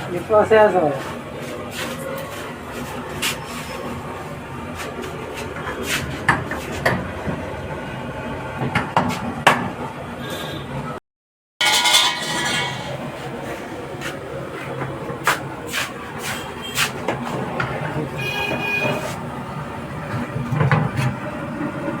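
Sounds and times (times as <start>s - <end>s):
utensils clinking against cookware: 11.6s - 14.2s.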